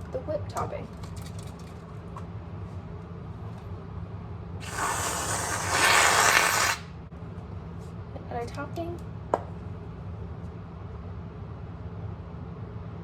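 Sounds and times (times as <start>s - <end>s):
aerosol can spraying: 4.6s - 6.9s.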